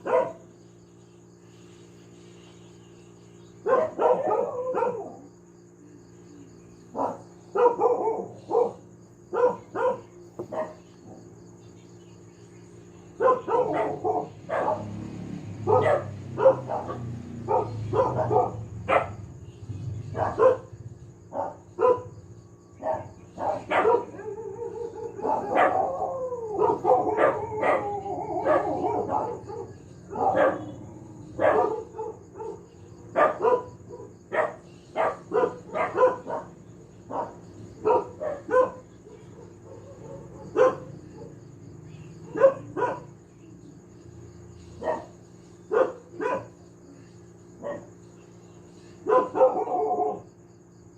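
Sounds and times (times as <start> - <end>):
dog barking: 0.0 - 0.5, 3.6 - 5.4, 6.9 - 11.2, 13.1 - 43.3, 44.8 - 46.8, 47.6 - 48.1, 49.0 - 50.3
dog howling: 3.7 - 5.3, 22.9 - 32.7, 49.1 - 50.2.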